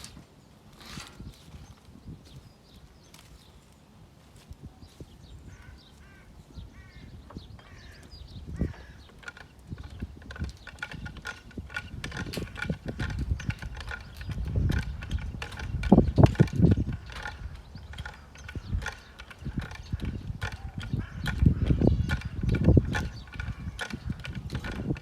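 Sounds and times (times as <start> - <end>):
hand winch ratchet clicking: 7.6 - 25.0.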